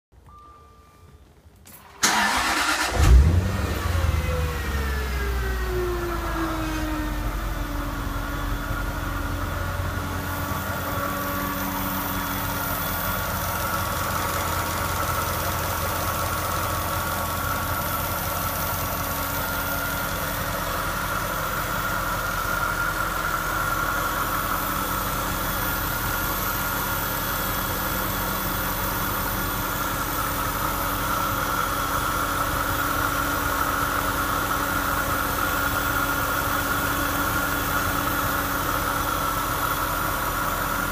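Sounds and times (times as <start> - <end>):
whirring whine: 2.1 - 31.9.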